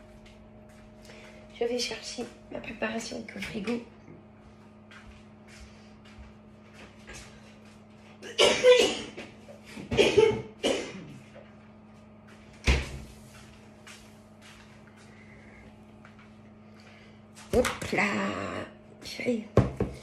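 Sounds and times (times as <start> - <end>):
woman coughing: 8.2 - 9.2, 9.8 - 11.2
door shutting with a thud: 12.6 - 13.1.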